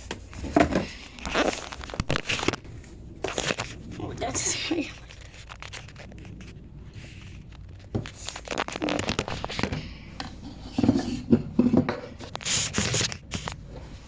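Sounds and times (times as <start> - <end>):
small objects crinkling and clicking: 0.8 - 10.4.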